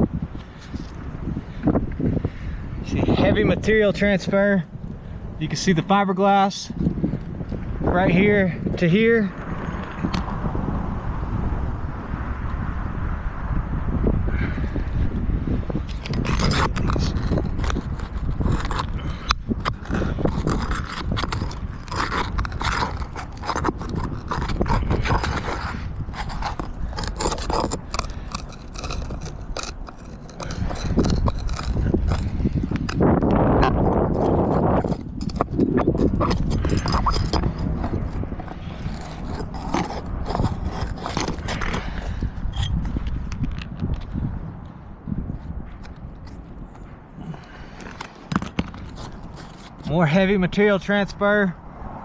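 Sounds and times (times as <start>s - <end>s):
metal tool scraping shingles: 15.9s - 43.0s, 47.5s - 50.1s.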